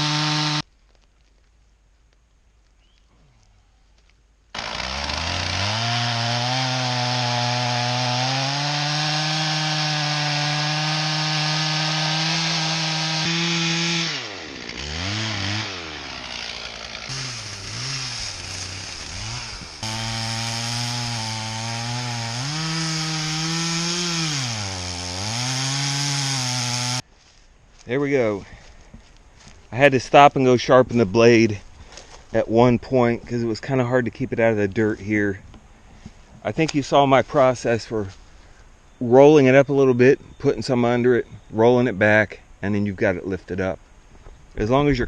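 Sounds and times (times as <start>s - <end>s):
chainsaw cutting a log: 0.0s - 0.6s, 4.6s - 27.0s.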